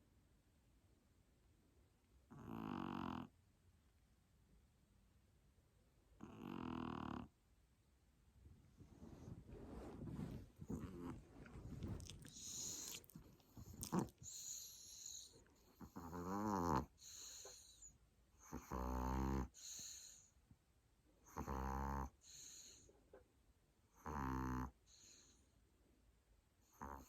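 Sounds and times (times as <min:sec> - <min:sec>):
pet snoring: 0:02.3 - 0:03.3, 0:06.2 - 0:07.3, 0:10.0 - 0:20.3, 0:21.3 - 0:22.9, 0:24.0 - 0:25.4, 0:26.7 - 0:27.0.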